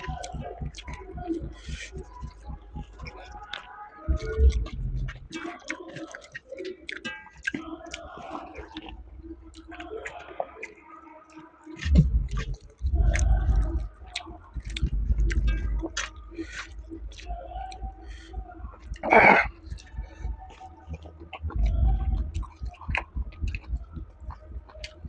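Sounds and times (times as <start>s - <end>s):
wet chewing mouth smacks: 0.0s - 25.0s
loud low bumps: 4.1s - 5.4s, 11.8s - 13.9s, 21.3s - 25.0s.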